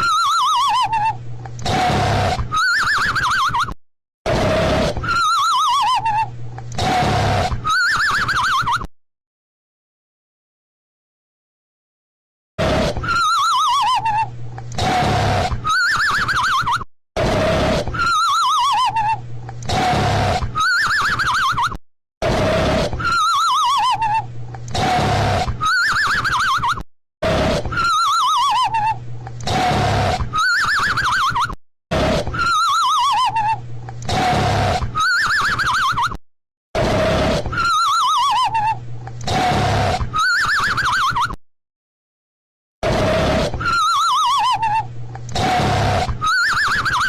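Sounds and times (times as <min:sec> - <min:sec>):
cartoon snoring: 0:01.6 - 0:02.7, 0:04.3 - 0:05.2, 0:06.7 - 0:07.8, 0:12.6 - 0:13.3, 0:14.8 - 0:15.8, 0:17.2 - 0:18.2, 0:19.6 - 0:20.8, 0:22.2 - 0:23.2, 0:24.7 - 0:25.8, 0:27.2 - 0:28.6, 0:29.4 - 0:30.6, 0:31.9 - 0:32.7, 0:34.0 - 0:35.2, 0:36.8 - 0:38.0, 0:39.2 - 0:40.4, 0:42.8 - 0:44.3, 0:45.3 - 0:47.0.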